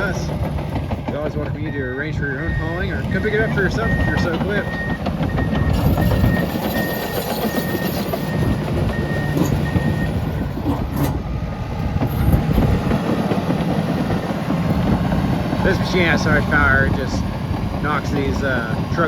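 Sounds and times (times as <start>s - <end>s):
bulldozer diesel engine: 0.0s - 19.0s
steel tracks clattering: 0.0s - 19.0s
reverse alarm beeping: 1.6s - 10.3s.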